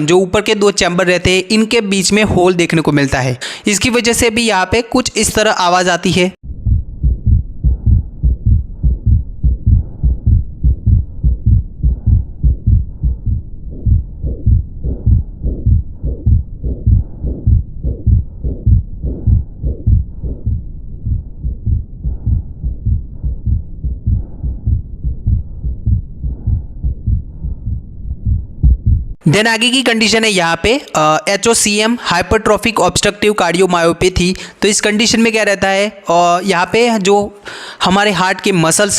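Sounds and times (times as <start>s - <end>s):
heart murmur: 6.4s - 29.2s
low heartbeats: 6.4s - 29.2s.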